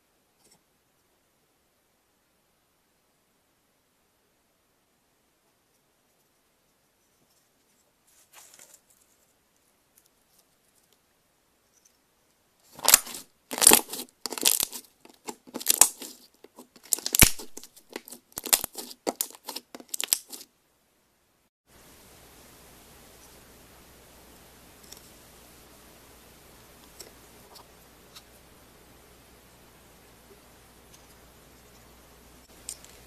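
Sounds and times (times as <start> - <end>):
slime squeezed by hand: 12.7 - 20.4.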